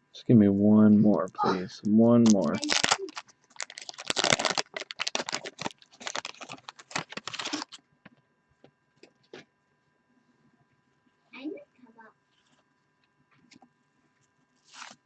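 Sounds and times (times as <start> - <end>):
card wrapper crinkling: 2.2 - 7.8, 14.6 - 15.0.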